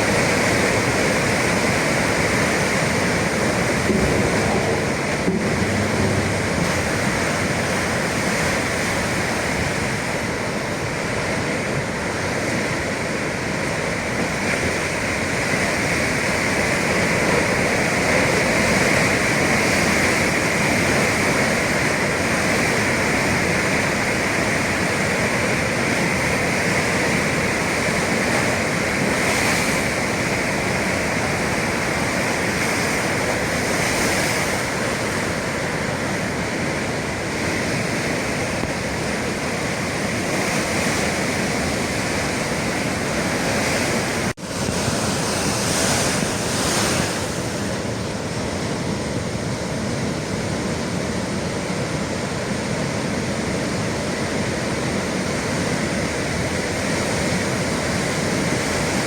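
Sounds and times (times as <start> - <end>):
sea waves breaking: 0.0 - 59.0.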